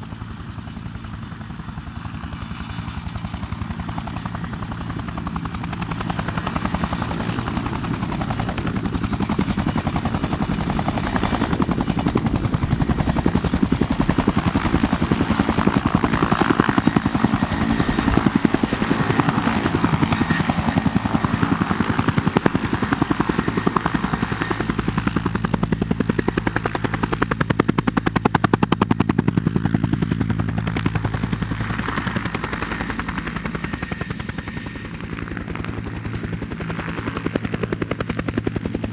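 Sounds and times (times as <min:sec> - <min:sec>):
helicopter rotor chop: 0:00.0 - 0:38.9.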